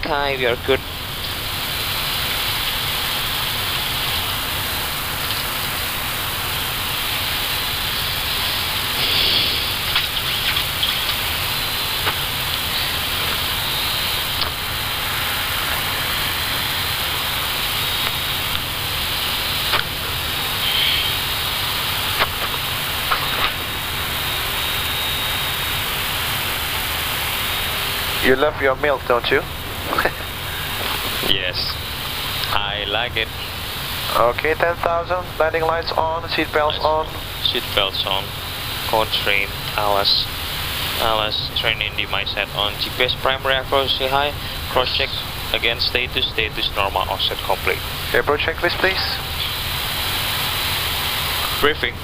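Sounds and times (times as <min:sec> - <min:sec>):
rushing airflow and air conditioning: 0:00.0 - 0:52.0.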